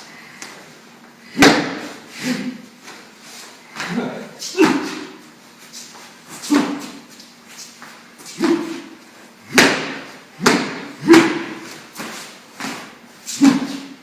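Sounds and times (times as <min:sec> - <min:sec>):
feet stamping on floor: 0:06.0 - 0:14.0.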